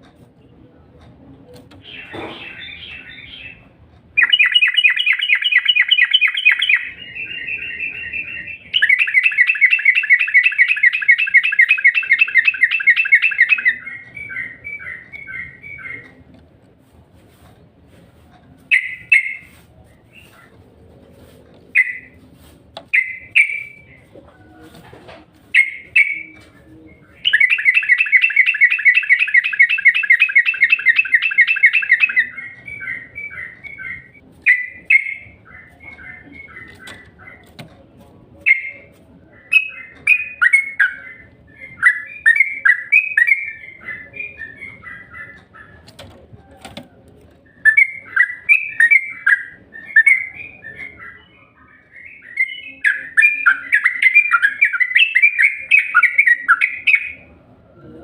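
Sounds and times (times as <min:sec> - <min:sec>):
fast bird trill: 0:04.2 - 0:14.6, 0:27.2 - 0:37.1.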